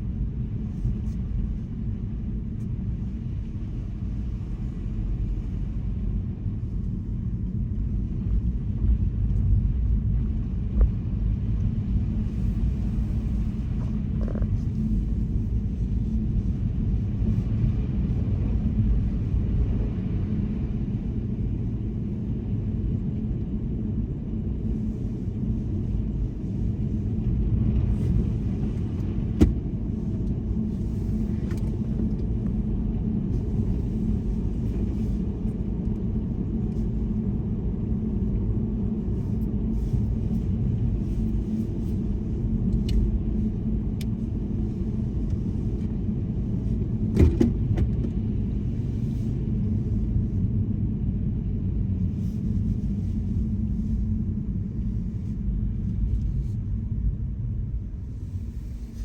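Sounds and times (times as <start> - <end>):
car engine and road noise: 24.6 - 50.4.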